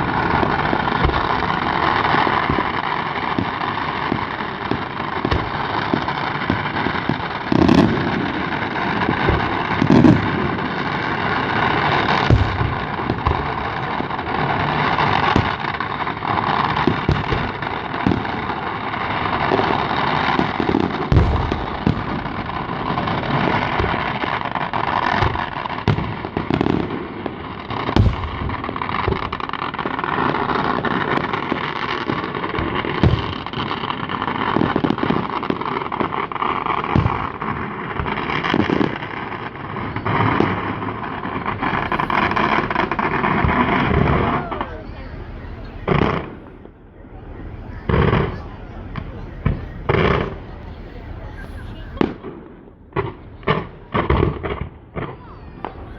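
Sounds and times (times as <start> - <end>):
rushing crackling noise: 0.0 - 26.4, 28.5 - 55.9
firework shells bursting: 40.4 - 55.9.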